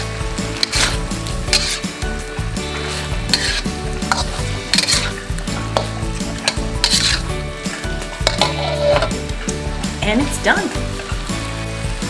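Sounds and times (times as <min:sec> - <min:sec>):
swish of stirring: 0:00.0 - 0:07.4
stir fry sizzling in a frying pan: 0:00.0 - 0:12.0.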